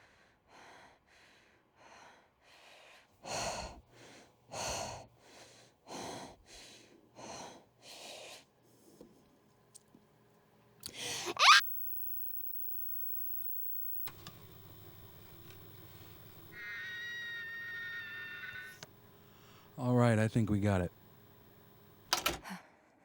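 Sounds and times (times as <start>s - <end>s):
woman breathing heavily: 0.0s - 8.4s.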